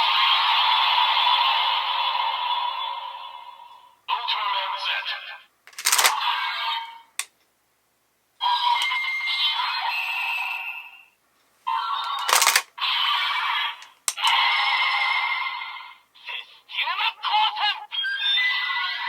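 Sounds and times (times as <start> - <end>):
toy sharp click: 5.7 - 6.2, 12.1 - 12.7, 13.8 - 14.4.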